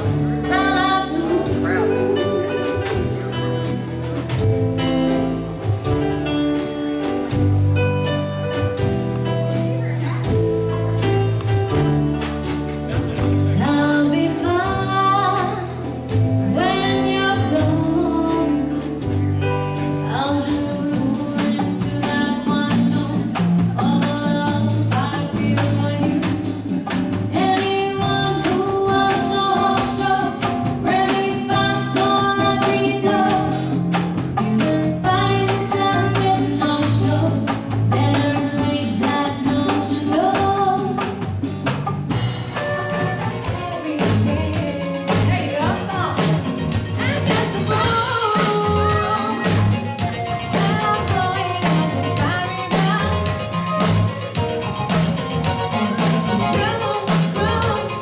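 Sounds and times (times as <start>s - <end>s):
person singing: 0.0s - 3.5s, 42.6s - 54.6s, 55.3s - 58.0s
bass: 0.0s - 58.0s
drum kit: 0.0s - 58.0s.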